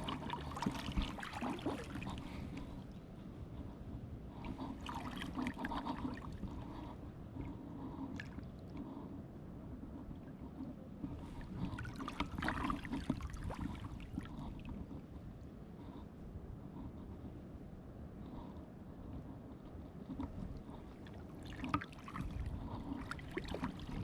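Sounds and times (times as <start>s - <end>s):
water splashing and trickling: 0.0s - 2.9s, 4.5s - 6.8s, 11.2s - 14.7s, 20.9s - 24.0s
wind on microphone: 0.0s - 5.4s, 22.1s - 24.0s.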